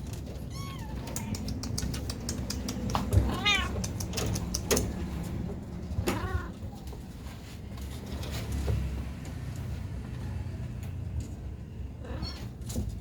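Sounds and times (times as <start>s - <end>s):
cats meowing: 0.2s - 1.7s, 2.7s - 4.4s, 5.9s - 6.7s, 12.0s - 12.7s.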